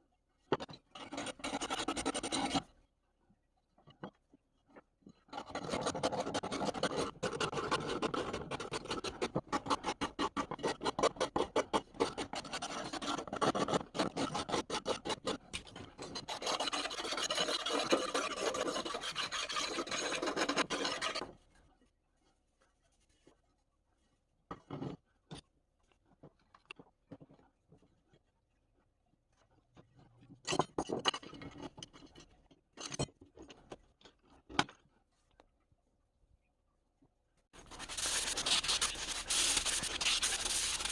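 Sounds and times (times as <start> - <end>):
hand file scraping: 1.0 - 2.7, 5.4 - 21.3, 37.6 - 40.9.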